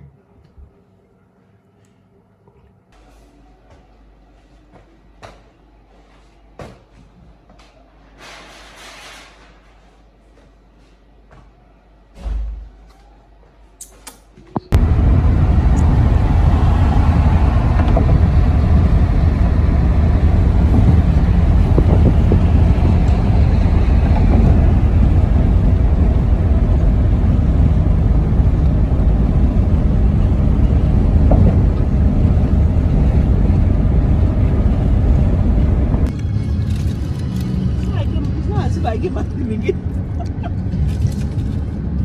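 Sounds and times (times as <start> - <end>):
motor vehicle rumble: 14.6 - 42.0.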